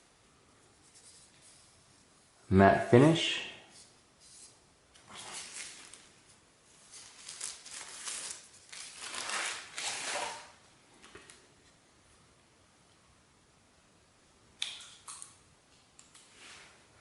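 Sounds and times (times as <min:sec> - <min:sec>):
packaging crinkling: 0:06.8 - 0:10.6.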